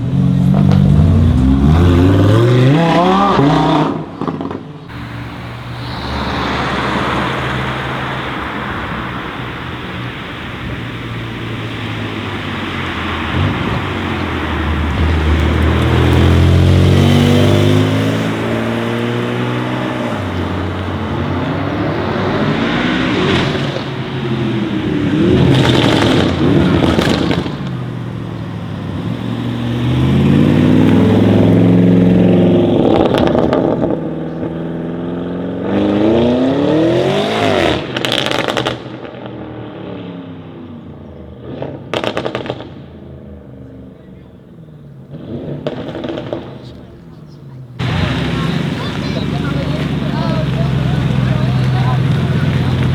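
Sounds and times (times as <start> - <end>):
exhaust popping crackles: 0.0 - 34.9, 37.6 - 39.3, 41.5 - 52.9
car engine accelerating: 0.0 - 52.9.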